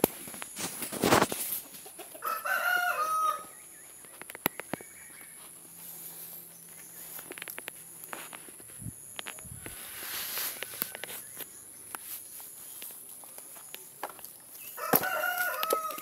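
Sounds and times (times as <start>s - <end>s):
rooster crowing: 2.2s - 3.6s, 9.6s - 11.4s, 14.7s - 16.0s
faint low hum: 2.4s - 15.9s
scattered clicks: 4.0s - 4.9s, 7.1s - 9.8s.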